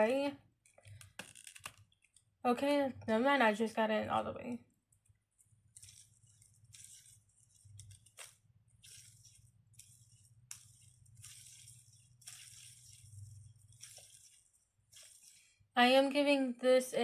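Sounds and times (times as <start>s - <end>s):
fidget toy rattling: 5.7s - 15.5s.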